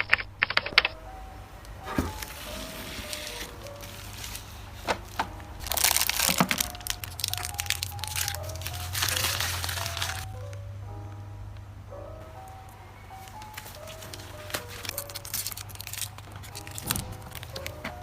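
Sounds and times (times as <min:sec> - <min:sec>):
sharp clicks: 0:00.0 - 0:01.0
soft background music: 0:00.5 - 0:18.0
packaging crinkling: 0:02.1 - 0:10.3, 0:13.2 - 0:18.0.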